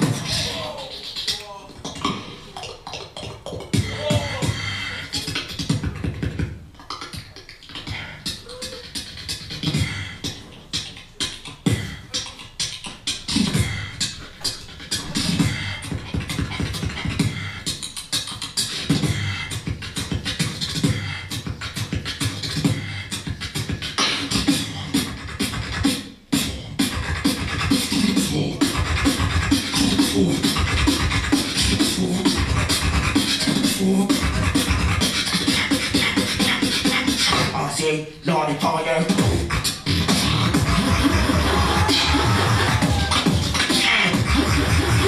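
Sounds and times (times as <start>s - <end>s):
person beatboxing: 0.0s - 45.0s.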